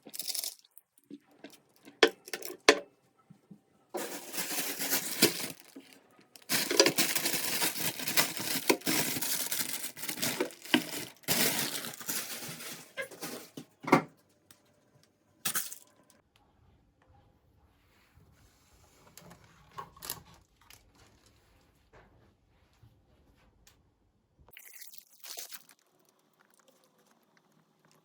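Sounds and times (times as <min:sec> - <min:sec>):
crinkling and rustling: 0:00.0 - 0:13.8.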